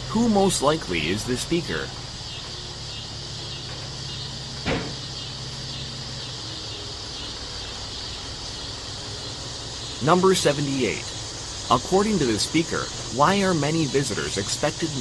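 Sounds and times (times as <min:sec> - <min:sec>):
brief knock: 0:04.6 - 0:05.0.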